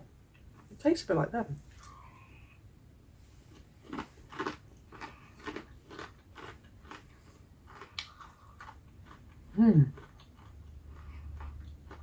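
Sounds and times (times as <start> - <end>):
chewing crunchy food: 3.5 - 12.0.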